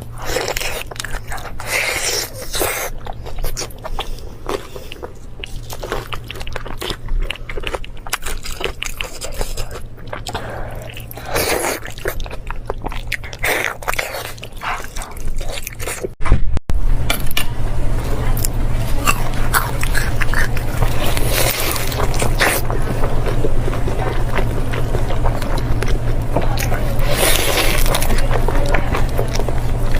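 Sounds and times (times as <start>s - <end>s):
person chewing food: 0.0s - 16.2s, 18.4s - 29.9s
low hum: 0.0s - 29.9s
loud bite: 18.4s - 29.9s.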